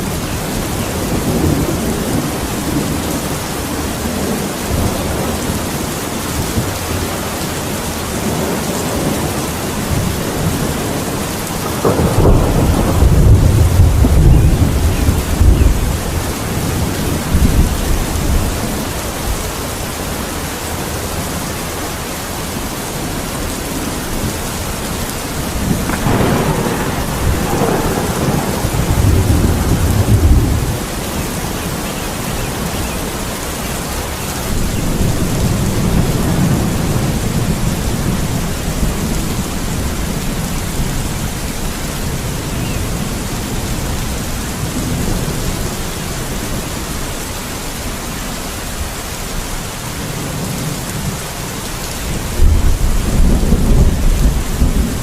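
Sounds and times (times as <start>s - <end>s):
steady rain: 0.0s - 55.0s
rolling thunder: 8.1s - 18.8s, 25.0s - 33.1s, 34.4s - 46.6s, 52.1s - 55.0s.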